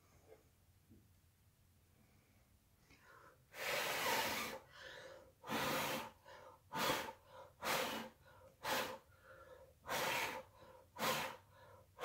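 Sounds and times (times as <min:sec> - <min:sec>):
soft in-breaths: 0:01.9 - 0:12.0
person blowing out hard: 0:03.6 - 0:04.6, 0:05.4 - 0:06.1, 0:09.9 - 0:10.4, 0:11.0 - 0:11.4.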